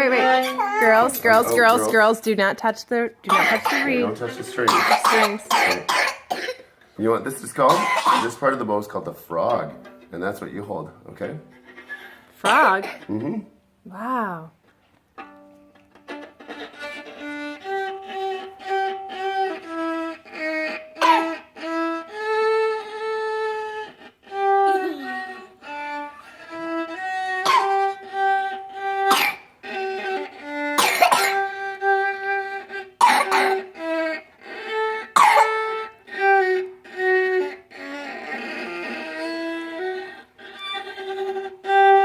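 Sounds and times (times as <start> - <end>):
person coughing loudly: 3.3 - 6.7, 7.6 - 8.6, 12.5 - 13.4, 21.0 - 21.4, 27.5 - 27.7, 29.1 - 29.4, 30.8 - 31.4, 33.0 - 33.6, 35.2 - 35.5
viola playing short bowed notes: 3.4 - 4.8, 7.4 - 11.8, 15.2 - 42.0.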